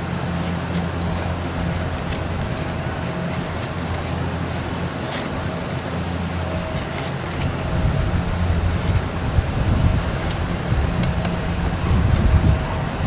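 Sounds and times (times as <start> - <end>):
knife scraping wood: 0.0 - 13.0
steady low rumble: 0.0 - 13.0.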